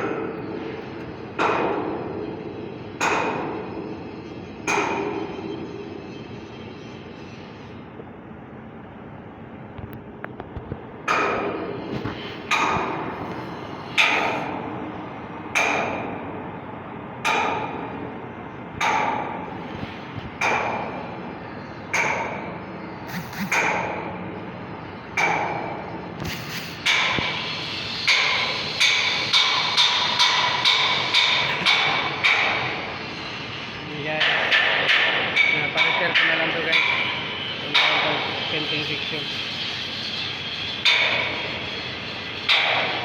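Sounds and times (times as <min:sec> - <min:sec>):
hammer striking metal: 0:01.4 - 0:02.0, 0:14.0 - 0:14.6, 0:15.5 - 0:16.2, 0:17.3 - 0:17.8, 0:26.8 - 0:27.4, 0:28.1 - 0:32.8, 0:34.2 - 0:38.3, 0:40.8 - 0:41.6, 0:42.5 - 0:43.0.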